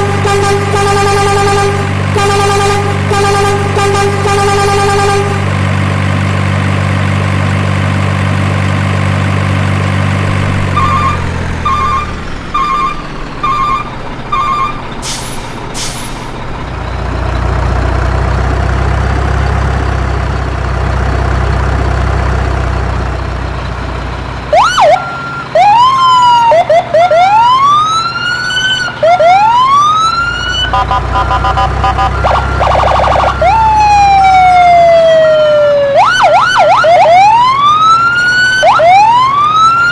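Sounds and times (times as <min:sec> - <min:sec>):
electronic siren wail: 0:00.0 - 0:05.5, 0:10.6 - 0:14.9, 0:24.5 - 0:39.9
electronic engine hum: 0:00.0 - 0:26.0, 0:29.2 - 0:35.6
short electronic beeps: 0:30.6 - 0:33.3.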